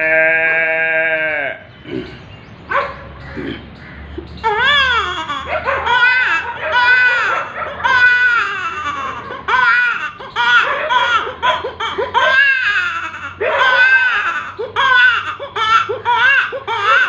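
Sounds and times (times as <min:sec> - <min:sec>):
man making crying calls: 0:03.4 - 0:17.0.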